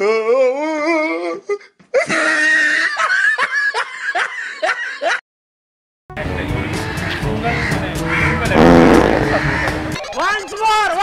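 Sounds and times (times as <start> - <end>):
hearty laughter: 2.0 - 5.2.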